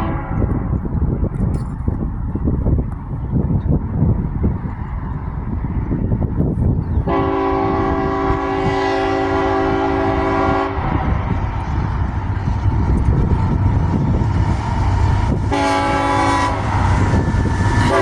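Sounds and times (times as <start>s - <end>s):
locomotive air horn blast: 0.0s - 0.7s, 7.1s - 11.2s, 15.5s - 18.0s
train rumbling: 0.0s - 18.0s.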